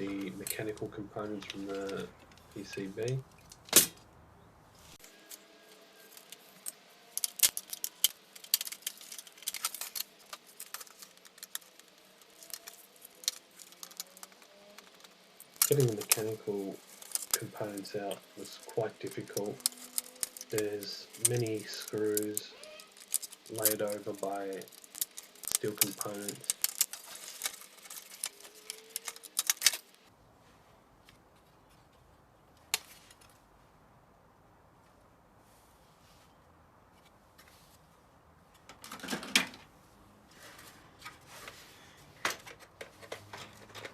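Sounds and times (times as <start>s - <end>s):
sharp clicks of metal parts: 6.1s - 30.0s.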